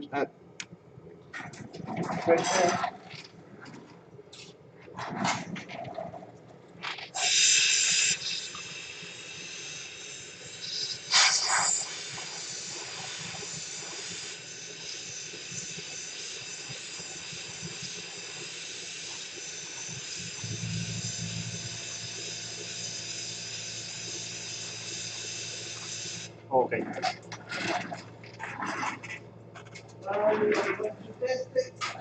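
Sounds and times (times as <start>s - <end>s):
air blower hissing and whining: 7.2s - 26.7s
low hum: 20.4s - 22.7s.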